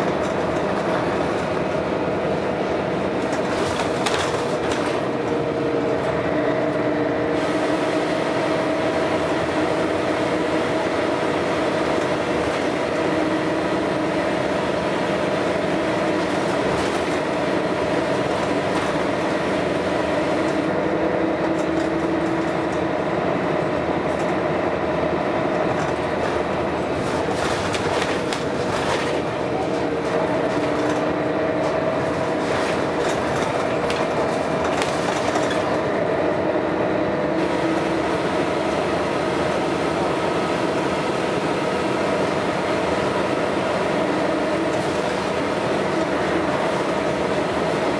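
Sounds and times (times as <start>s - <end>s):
bus engine running under load: 0.0s - 47.9s.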